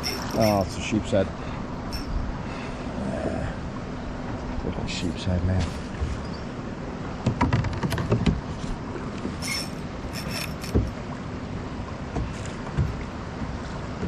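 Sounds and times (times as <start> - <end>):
high-pitched zips: 0.0 - 0.6, 1.9 - 2.1, 9.4 - 10.7
water sloshing against hull: 0.0 - 14.0
dull knocks on boat: 7.2 - 8.5, 10.7 - 11.0, 12.1 - 13.0.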